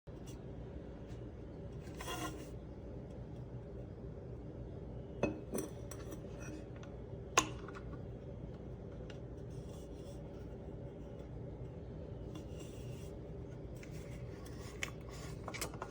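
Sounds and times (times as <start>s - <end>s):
bottle scraping on hard surface: 1.9s - 2.5s.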